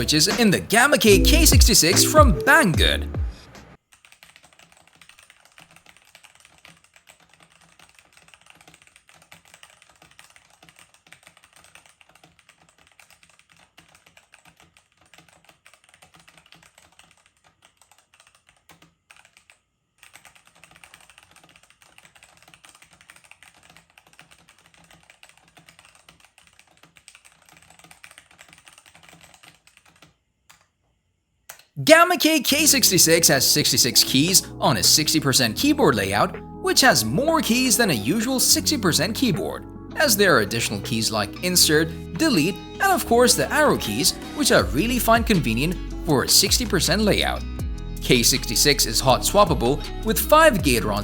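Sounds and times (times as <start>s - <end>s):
fast typing on mechanical keyboard: 3.8s - 30.8s.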